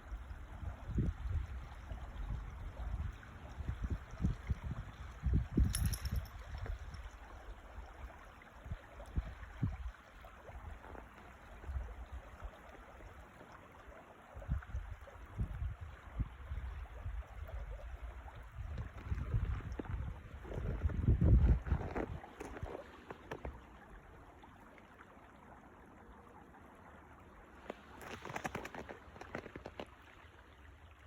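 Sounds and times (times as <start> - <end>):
wind buffeting microphone: 0.8 - 7.0, 18.5 - 22.7.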